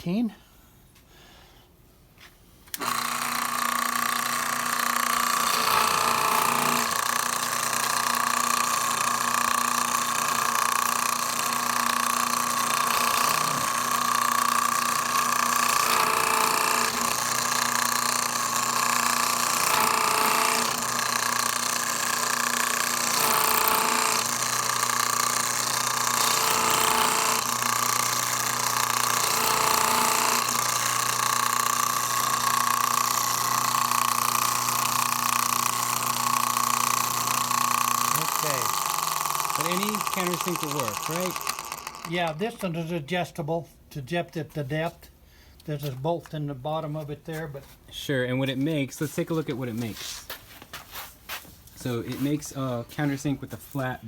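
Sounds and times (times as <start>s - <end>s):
electric drill whining: 2.7s - 42.4s.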